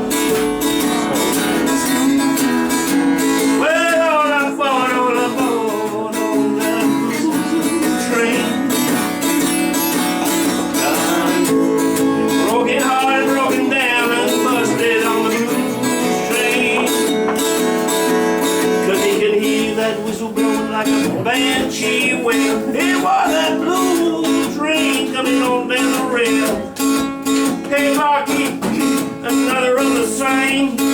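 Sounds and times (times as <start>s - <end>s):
bending lead melody: 0.0s - 3.6s, 5.7s - 18.9s
acoustic guitar strumming: 0.0s - 30.9s.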